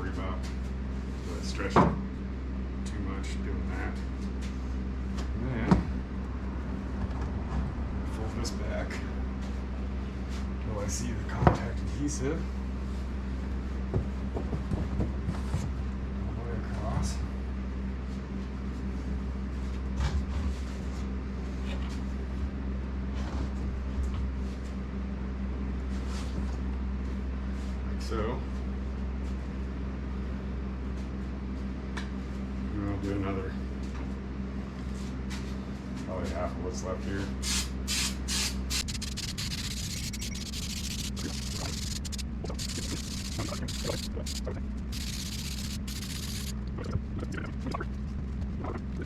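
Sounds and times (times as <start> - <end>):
steady low hum: 0.0 - 26.0, 37.4 - 49.0
heater humming: 37.9 - 49.0.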